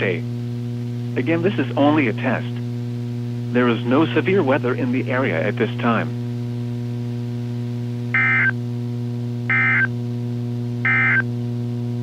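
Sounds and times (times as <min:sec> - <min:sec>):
steady electrical hum: 0:00.0 - 0:12.0
warbling two-pitch data tones: 0:08.2 - 0:08.5, 0:09.5 - 0:09.9, 0:10.9 - 0:11.2.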